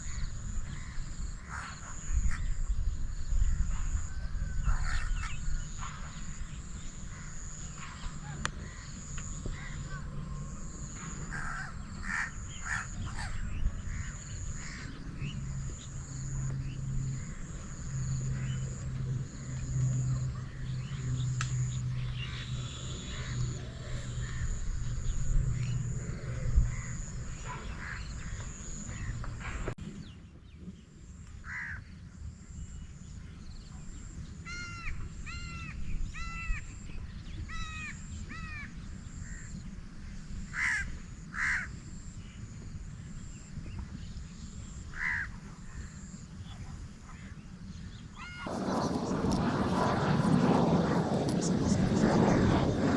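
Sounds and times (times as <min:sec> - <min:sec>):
steady low hum: 0:00.0 - 0:29.8, 0:48.5 - 0:52.9
crows cawing: 0:11.3 - 0:15.0, 0:31.4 - 0:31.8, 0:40.6 - 0:41.7, 0:45.0 - 0:45.3
birds chirping: 0:48.4 - 0:52.9
high pulsing buzz: 0:48.5 - 0:52.9.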